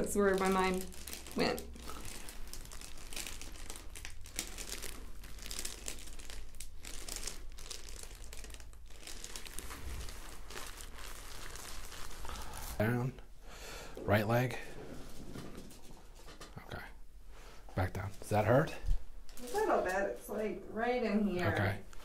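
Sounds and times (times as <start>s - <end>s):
crinkling and rustling on table: 0.0s - 12.8s.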